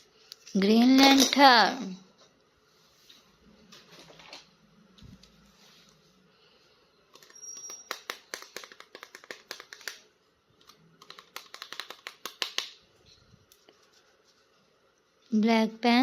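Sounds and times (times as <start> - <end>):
plastic packaging clicks and crackles: 7.2 - 12.8.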